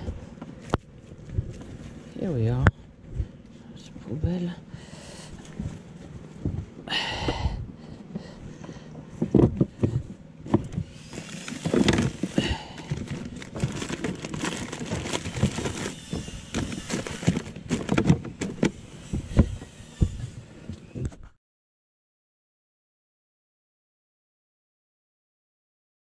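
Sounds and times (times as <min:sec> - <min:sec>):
plastic trash bins clunking: 0:09.2 - 0:18.8.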